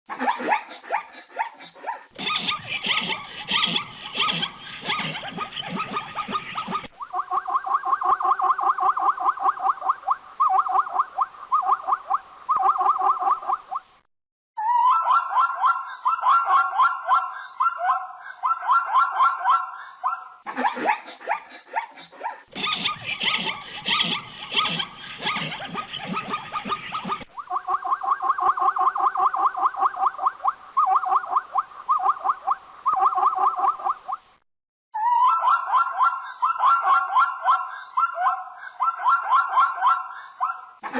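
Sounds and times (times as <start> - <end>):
zebra yelping calls: 0.2 - 13.6, 20.6 - 33.9.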